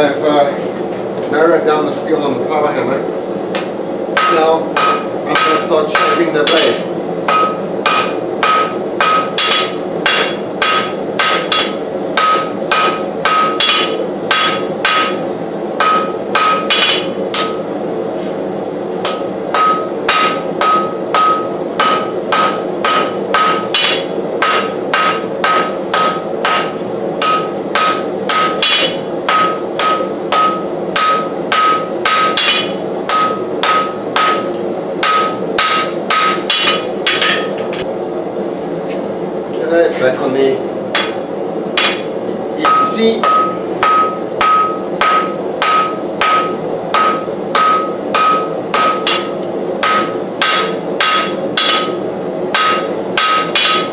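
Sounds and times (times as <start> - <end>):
hammer ringing on anvil: 4.2 - 15.2, 15.8 - 17.7, 19.0 - 37.8, 41.8 - 53.9.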